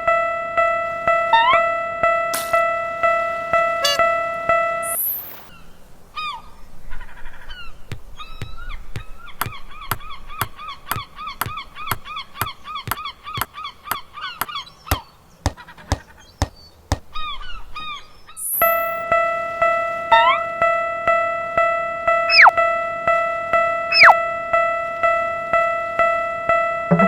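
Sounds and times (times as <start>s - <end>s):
short honk-like calls: 3.7s - 4.6s, 23.9s - 24.2s
sharp clicks beating: 22.3s - 22.5s, 24.0s - 24.2s.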